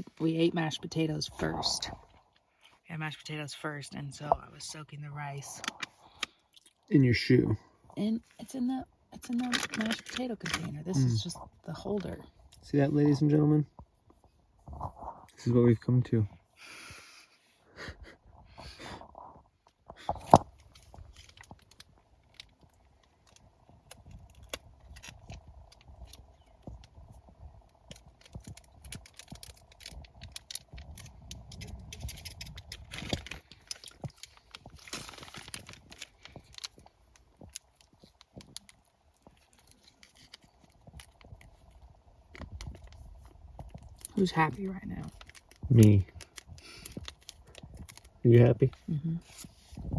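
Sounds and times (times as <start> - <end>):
food handled in plastic container: 27.8 - 44.4.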